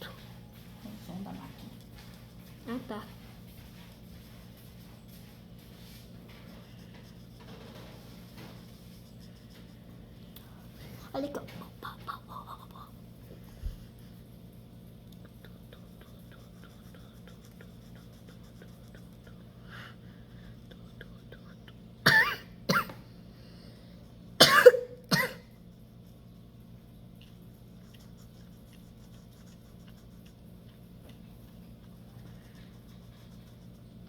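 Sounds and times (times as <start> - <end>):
steady low hum: 0.0 - 34.0
person coughing: 22.0 - 23.0, 24.4 - 25.6.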